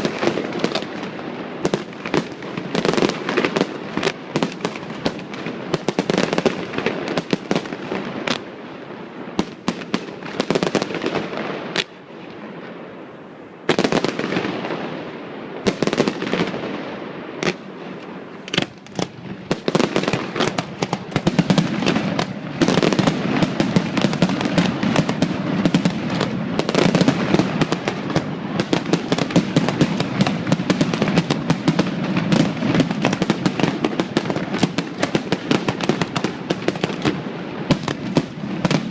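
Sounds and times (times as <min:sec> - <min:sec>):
heavy firework bangs: 0:00.0 - 0:08.6, 0:13.7 - 0:38.9
fireworks popping and crackling: 0:00.0 - 0:12.9, 0:13.6 - 0:38.9.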